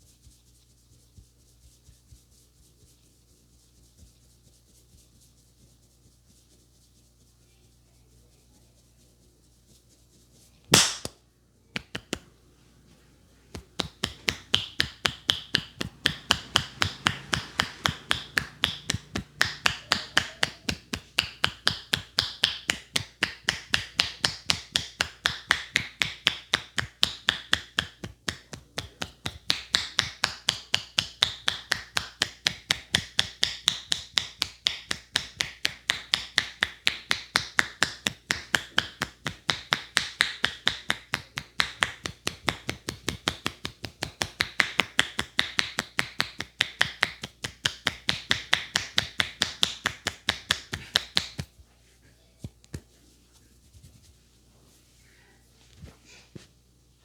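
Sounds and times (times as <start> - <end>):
hand slaps of head massage: 10.7 - 11.2, 11.8 - 12.3, 13.5 - 51.5, 52.4 - 53.0
sharp loud crack: 10.8 - 11.1.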